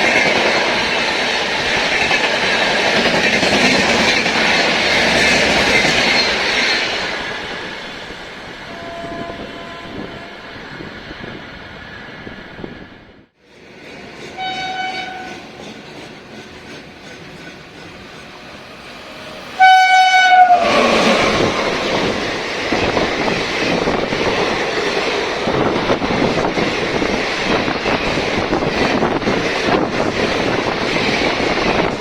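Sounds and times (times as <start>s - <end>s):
locomotive horn: 8.6s - 10.4s, 14.4s - 15.4s, 19.5s - 21.5s
wheels clattering on rails: 13.6s - 18.8s.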